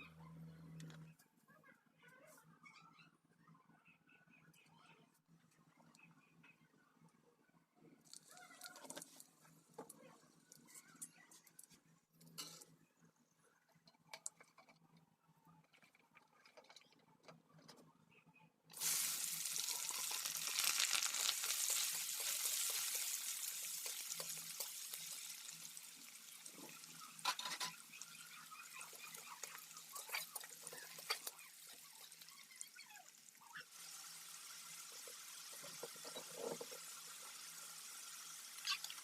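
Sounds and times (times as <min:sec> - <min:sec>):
sizzling in a pan: 0:18.7 - 0:39.0.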